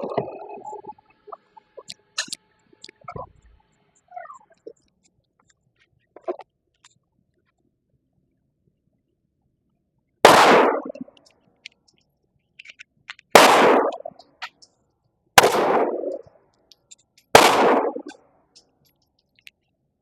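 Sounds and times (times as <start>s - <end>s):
faint clicks: 0.0s - 7.7s, 16.1s - 17.3s, 18.0s - 19.8s
pistol shots echoing: 10.2s - 11.0s, 13.4s - 14.1s, 15.4s - 16.2s, 17.4s - 18.2s.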